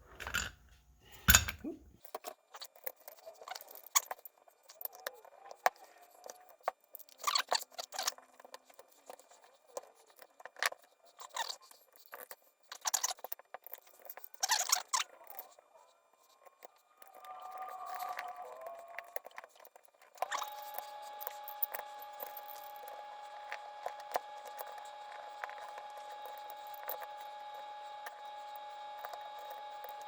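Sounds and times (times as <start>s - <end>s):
metal brake parts clicking and rattling: 0.1s - 1.6s.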